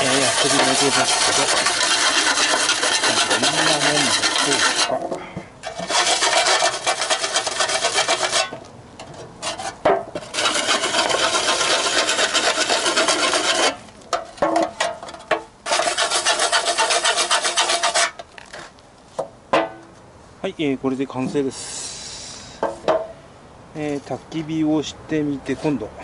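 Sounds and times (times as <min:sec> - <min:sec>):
hand file rasping on steel: 0:00.0 - 0:05.0, 0:05.6 - 0:08.5, 0:09.4 - 0:13.8, 0:15.7 - 0:18.2.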